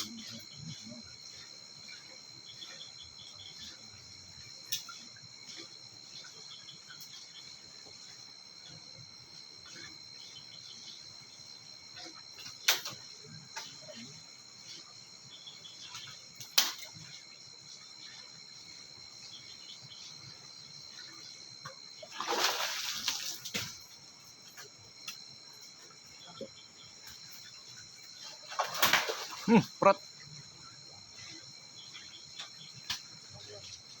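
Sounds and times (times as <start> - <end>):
insects chirring: 0.0 - 34.0
water splash: 22.1 - 23.8, 28.5 - 29.6.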